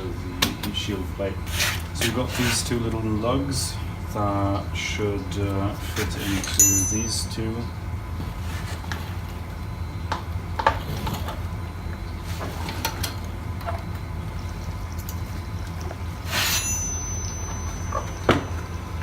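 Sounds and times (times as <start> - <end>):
steady low hum: 0.0 - 19.0
scraping rustle: 1.4 - 2.8, 5.7 - 6.6.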